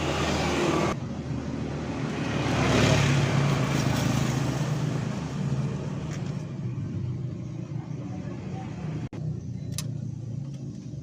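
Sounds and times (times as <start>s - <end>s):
vehicle engine running: 4.6s - 11.0s.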